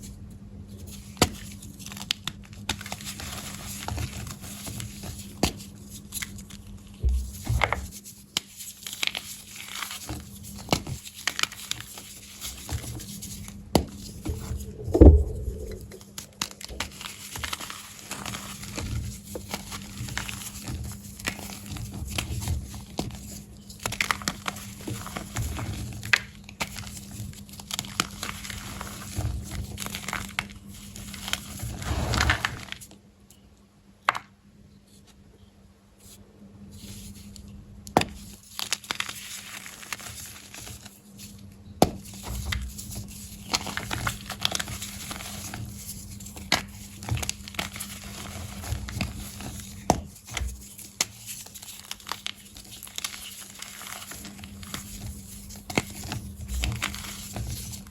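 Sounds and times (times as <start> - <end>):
heavy thud: 7.0 - 7.9, 14.2 - 16.0.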